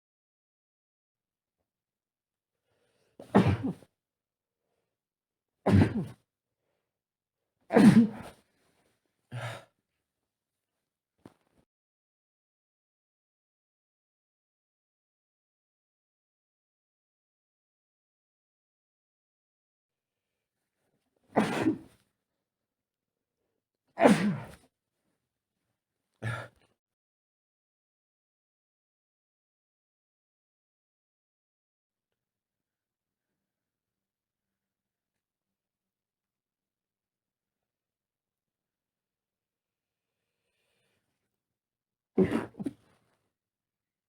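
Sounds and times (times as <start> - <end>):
man's muffled sneezes: 3.2 - 3.9, 5.7 - 6.2, 7.7 - 8.4, 21.3 - 22.0, 24.0 - 24.6, 26.2 - 26.6, 42.2 - 43.0.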